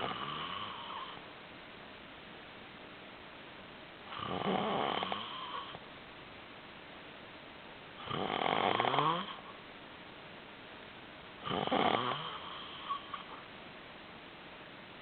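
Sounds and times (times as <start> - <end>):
loud snoring: 0.0 - 1.2, 4.1 - 5.8, 8.0 - 9.5, 11.4 - 13.4.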